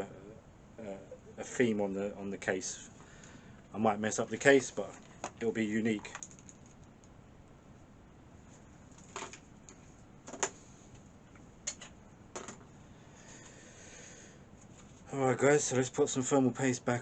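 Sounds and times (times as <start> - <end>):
light clicks and knocks of parts: 3.0 - 7.2.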